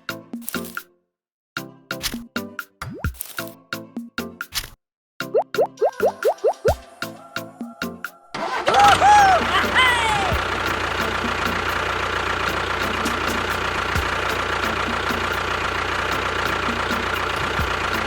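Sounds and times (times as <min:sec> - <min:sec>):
swooping whistle sound effects: 0:05.4 - 0:09.4
engine idling with ticking beat: 0:08.4 - 0:18.0.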